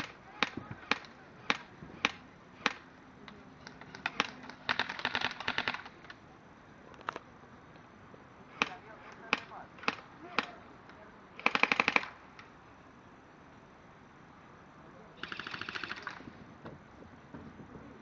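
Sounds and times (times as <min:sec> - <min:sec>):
airsoft gun full-auto burst: 0:03.9 - 0:05.9, 0:11.4 - 0:12.2, 0:15.2 - 0:16.3.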